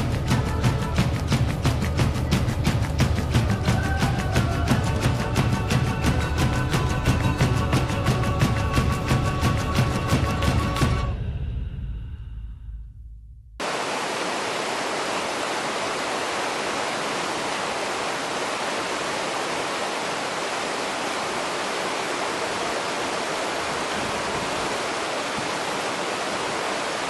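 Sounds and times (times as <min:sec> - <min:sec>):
waterfall rushing: 0:13.6 - 0:27.0.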